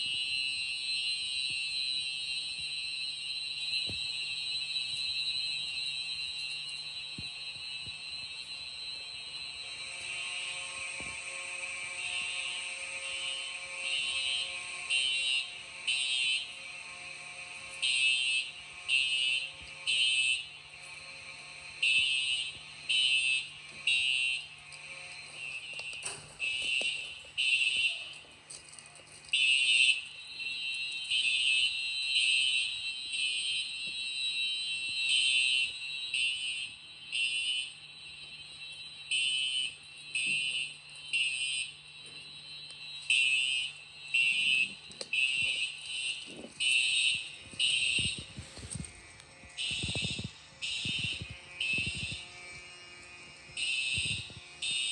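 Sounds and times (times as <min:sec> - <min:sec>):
fire alarm blasts: 0:00.0 - 0:54.9.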